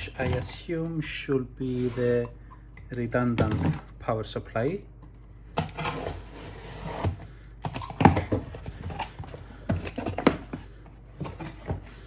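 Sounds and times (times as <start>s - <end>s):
cardboard box being opened: 7.8s - 12.0s.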